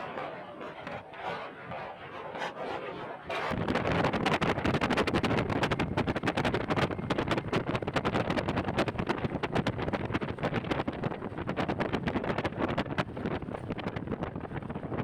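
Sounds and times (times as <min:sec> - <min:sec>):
wind buffeting microphone: 0:03.2 - 0:15.0.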